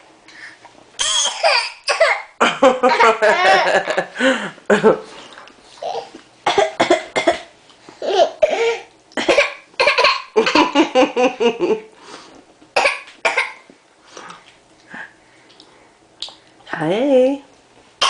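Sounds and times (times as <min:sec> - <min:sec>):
baby fake coughing: 0:01.0 - 0:02.4, 0:06.5 - 0:07.5, 0:09.2 - 0:10.6, 0:12.8 - 0:13.6.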